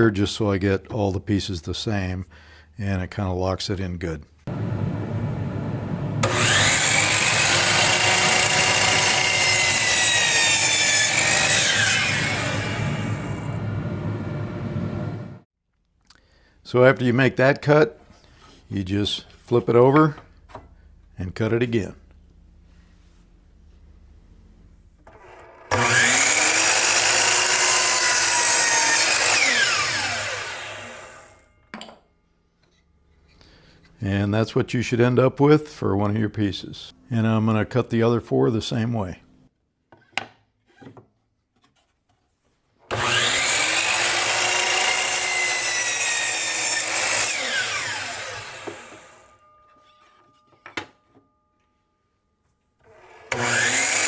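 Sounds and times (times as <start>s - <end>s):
miter saw cutting wood: 4.5s - 15.4s, 25.3s - 31.5s, 42.9s - 49.4s, 52.9s - 54.0s
saw motor running: 4.5s - 15.4s, 25.7s - 31.4s, 42.9s - 49.4s, 52.9s - 54.0s.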